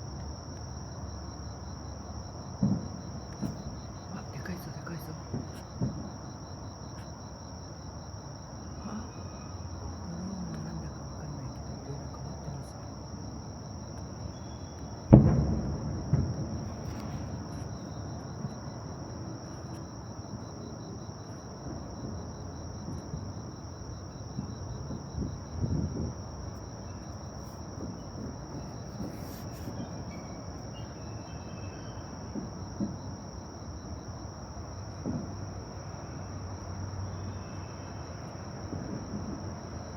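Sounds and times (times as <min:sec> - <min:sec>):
crickets chirring: 0:00.0 - 0:39.9
low outdoor murmur: 0:00.0 - 0:39.9
loud boom: 0:15.1 - 0:17.7.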